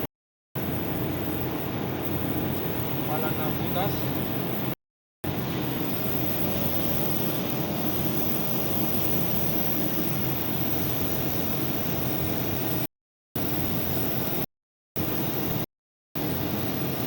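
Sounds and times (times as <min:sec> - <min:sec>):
machine rumbling: 0:00.6 - 0:12.9.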